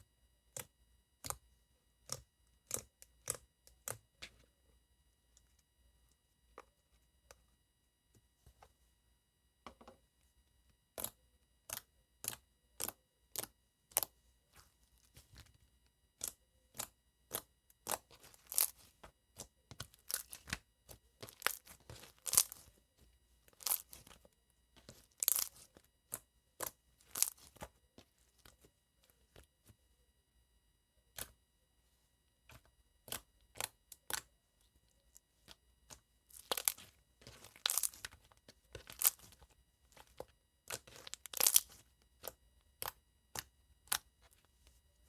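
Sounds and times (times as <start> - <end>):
fingernails clicking on slime: 0.5 - 1.4, 2.0 - 4.1, 10.9 - 14.1, 16.2 - 20.6, 40.0 - 44.1.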